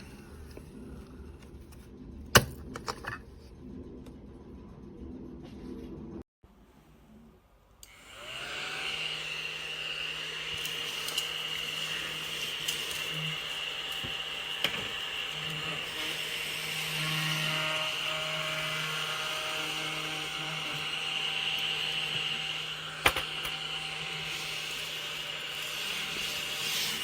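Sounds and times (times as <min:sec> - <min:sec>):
mini vacuum cleaner motor whine: 0:07.8 - 0:27.0.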